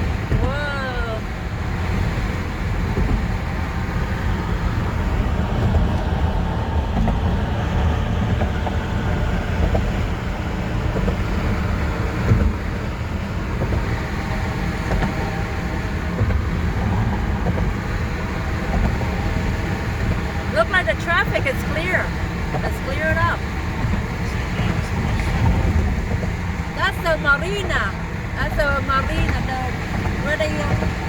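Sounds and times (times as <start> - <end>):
road and engine rumble in car: 0.0 - 31.0.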